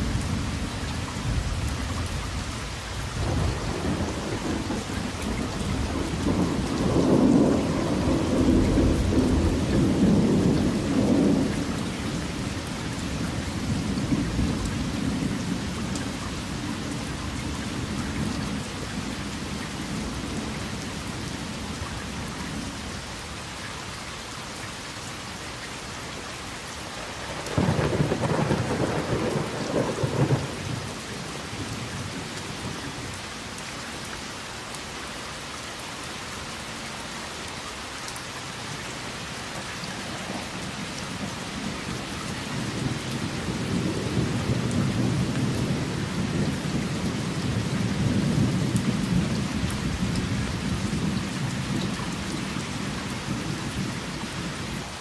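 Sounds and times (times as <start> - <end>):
low rumble of thunder: 0.0 - 22.8, 27.0 - 33.2, 39.5 - 55.0
heavy rain falling: 0.0 - 55.0.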